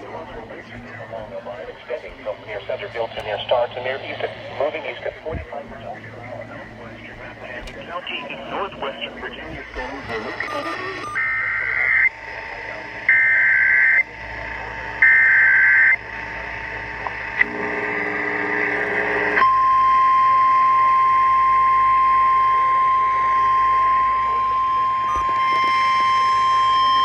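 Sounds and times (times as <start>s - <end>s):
steady warning alarm tone: 5.1s - 27.0s
warbling data tones: 7.9s - 16.1s, 23.2s - 27.0s.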